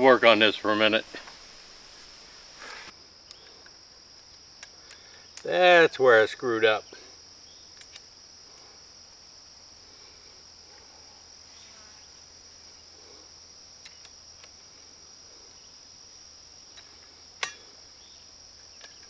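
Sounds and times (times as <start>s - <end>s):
crickets chirring: 0.0s - 19.0s
light clicks of tool handling: 7.7s - 8.1s, 13.8s - 14.6s, 16.7s - 17.7s.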